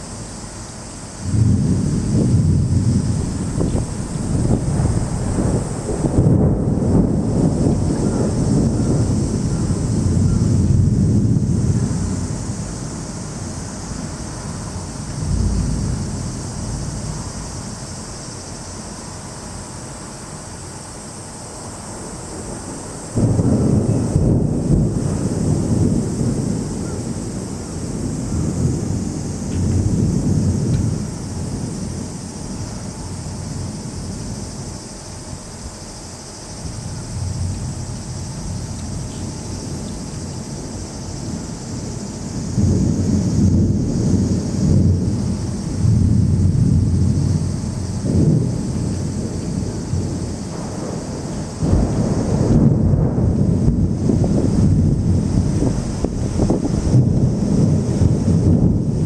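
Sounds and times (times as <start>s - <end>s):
torrential rain hissing: 0.0s - 59.0s
thunder rumble: 1.1s - 20.8s, 21.6s - 59.0s.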